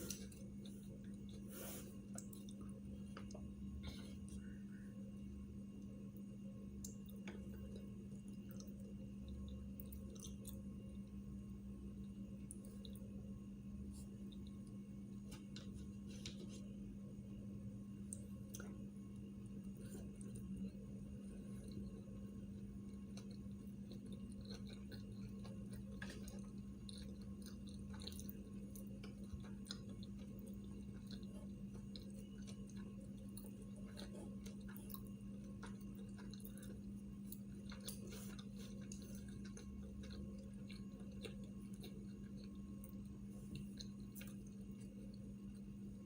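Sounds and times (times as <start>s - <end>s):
person chewing: 0.0s - 4.6s, 6.8s - 11.0s, 18.0s - 46.0s
steady low hum: 0.0s - 46.0s.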